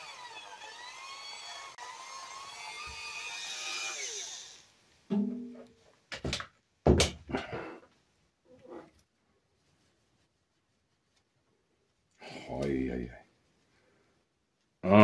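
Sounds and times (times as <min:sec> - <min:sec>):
rotary tool whining: 0:00.0 - 0:04.7.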